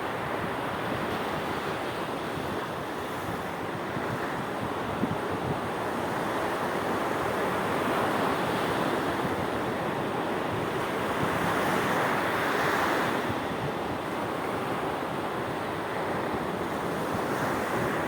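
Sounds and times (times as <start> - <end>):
wind noise on microphone: 0.0 - 18.0.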